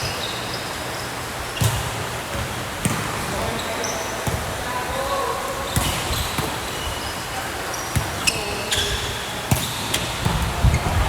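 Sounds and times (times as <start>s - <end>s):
shoe squeaks: 5.7s - 10.1s.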